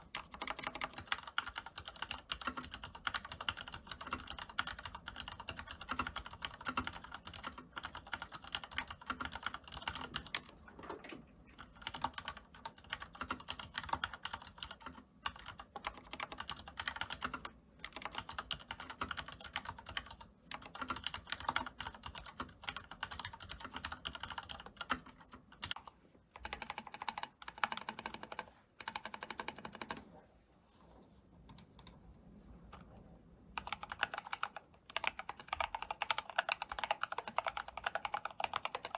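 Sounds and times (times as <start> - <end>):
typing on mechanical keyboard: 0.0 - 30.1, 33.6 - 38.9.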